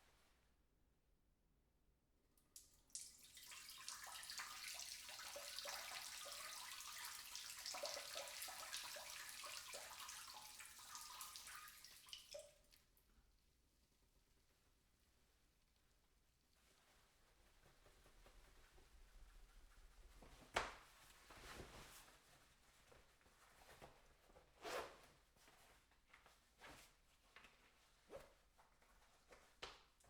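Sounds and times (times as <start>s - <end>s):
water drips: 2.5s - 12.8s
urine stream splashing into water: 2.9s - 12.5s.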